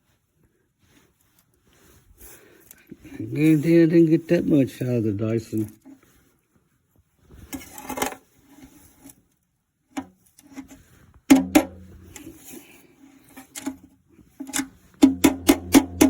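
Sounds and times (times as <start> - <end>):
handling rustling: 10.4 - 16.0.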